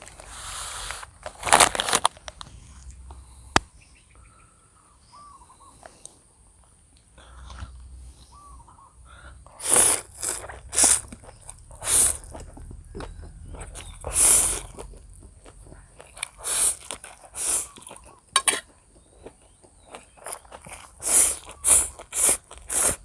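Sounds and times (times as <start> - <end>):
hissy mouth noises: 0.2 - 1.2, 7.3 - 12.9, 13.5 - 15.4, 16.1 - 18.1, 20.8 - 23.0
person chewing noodles: 9.0 - 23.0.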